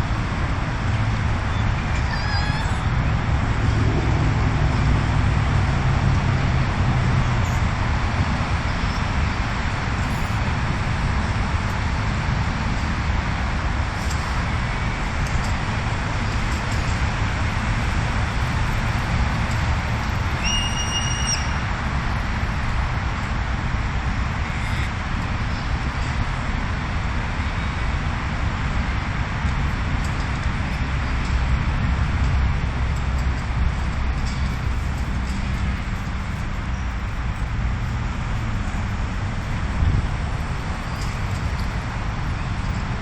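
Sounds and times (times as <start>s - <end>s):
heavy low rumble: 0.0s - 20.4s, 25.0s - 43.0s
high whistle-like tone: 20.4s - 21.6s.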